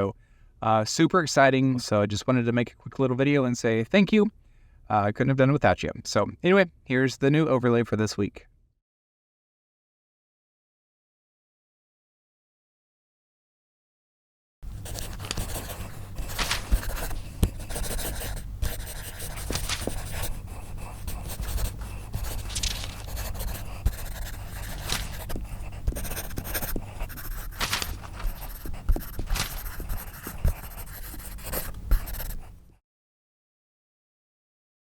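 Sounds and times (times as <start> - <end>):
low steady hum: 14.6 - 32.7
pencil scratching on paper: 14.6 - 32.7.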